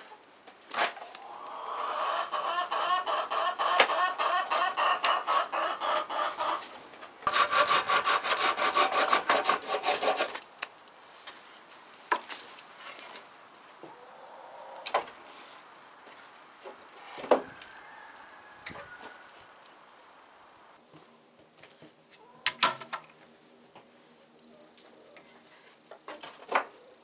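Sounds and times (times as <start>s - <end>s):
hen clucking: 1.0s - 6.8s, 13.8s - 15.1s, 17.0s - 20.0s, 22.1s - 22.6s
hand saw cutting wood: 7.2s - 10.5s.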